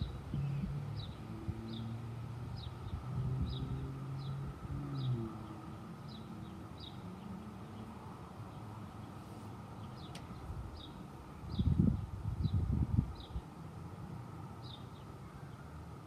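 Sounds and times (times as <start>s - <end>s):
vehicle engine hum: 0.0s - 16.0s
bird chirping: 9.7s - 13.4s.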